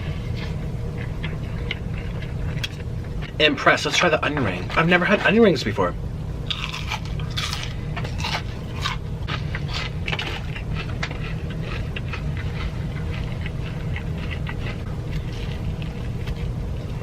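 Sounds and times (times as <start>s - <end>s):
low hum: 0.0s - 17.0s
crunchy chewing: 6.5s - 17.0s.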